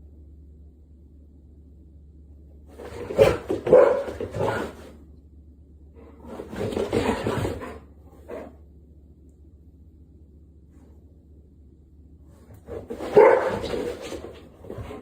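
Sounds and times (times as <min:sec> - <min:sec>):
dog barking: 0:02.9 - 0:04.9, 0:12.8 - 0:14.2.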